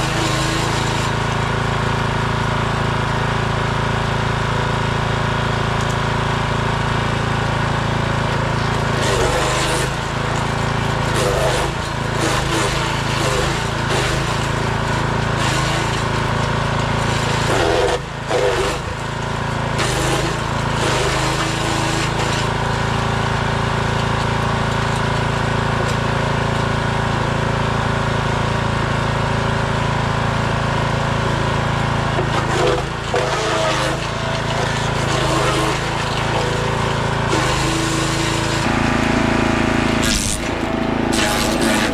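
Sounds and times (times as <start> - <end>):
wood chipper engine running: 0.0 - 41.9.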